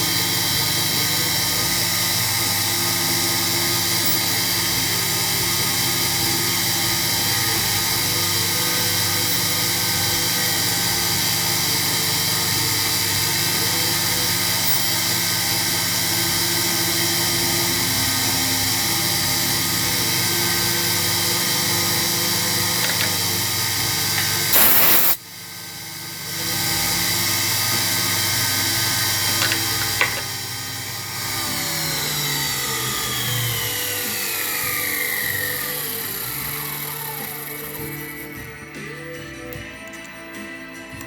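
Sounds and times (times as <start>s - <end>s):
milling machine spindle whine: 0.0s - 39.2s
loud burst of noise: 24.2s - 25.3s.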